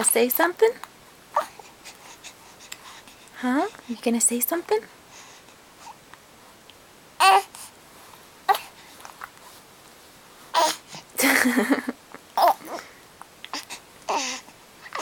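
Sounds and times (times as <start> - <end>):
baby vocalizing: 1.4 - 1.7, 7.2 - 7.5, 10.6 - 10.8, 12.4 - 12.9, 13.5 - 15.0
baby hiccupping: 10.6 - 10.8, 12.4 - 12.8.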